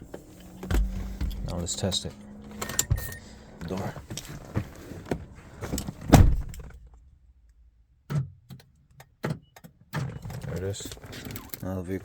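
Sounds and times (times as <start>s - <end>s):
car door shutting with a thud: 0.6s - 1.5s, 5.9s - 6.8s.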